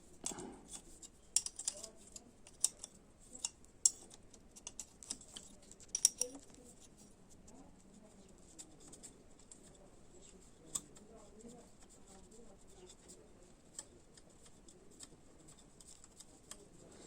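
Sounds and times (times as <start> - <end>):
metal hand tools clicking: 1.4 - 6.4.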